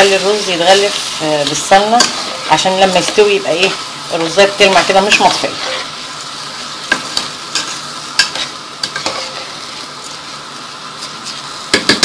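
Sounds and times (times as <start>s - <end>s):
rice sizzling in pot: 0.0s - 12.0s.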